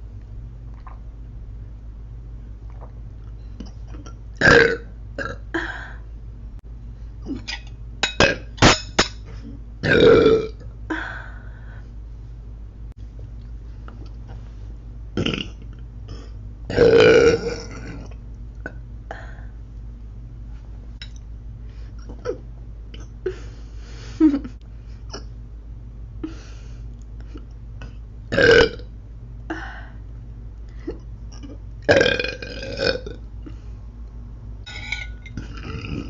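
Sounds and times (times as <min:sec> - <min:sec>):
woman belching: 0:03.9 - 0:05.6, 0:09.8 - 0:10.6, 0:15.2 - 0:18.8, 0:28.3 - 0:28.8, 0:31.4 - 0:33.2, 0:35.4 - 0:36.0.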